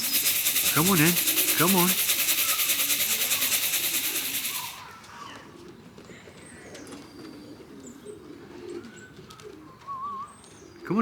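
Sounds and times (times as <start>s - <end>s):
loud rapid rattling: 0.0s - 5.0s
pigeons cooing: 0.0s - 5.8s, 6.8s - 10.4s.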